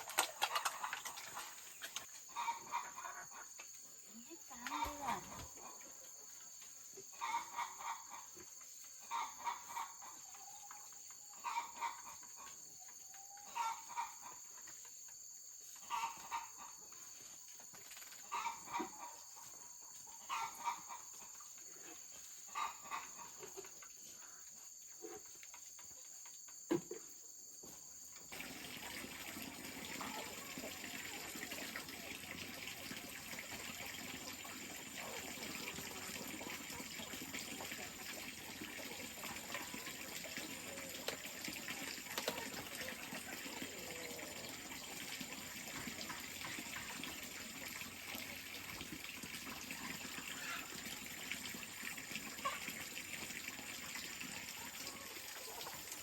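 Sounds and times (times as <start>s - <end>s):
fowl calling: 2.3s - 3.5s
running water rushing: 28.3s - 56.0s.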